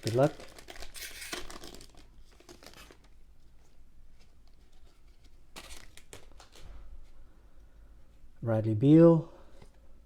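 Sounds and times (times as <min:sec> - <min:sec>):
wrapper crinkles: 0:00.0 - 0:03.2, 0:04.7 - 0:06.7
wrapper and cards rustling: 0:00.0 - 0:07.1.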